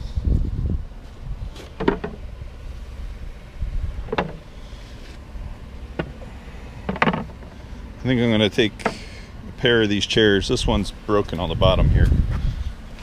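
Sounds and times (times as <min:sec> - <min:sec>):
wind rumble on microphone: 0:00.0 - 0:04.4, 0:10.4 - 0:13.0
chair thumping: 0:01.6 - 0:02.2, 0:04.1 - 0:04.4.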